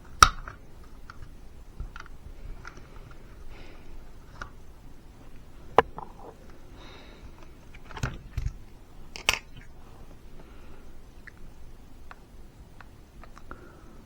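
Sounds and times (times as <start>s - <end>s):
clicks of tools and plastic parts: 7.4s - 9.7s.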